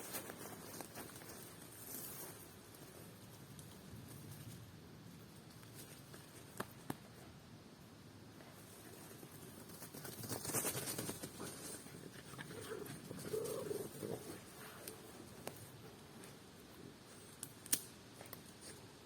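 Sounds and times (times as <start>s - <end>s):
dogs rustling on forest floor: 0.0s - 4.6s, 8.5s - 16.4s.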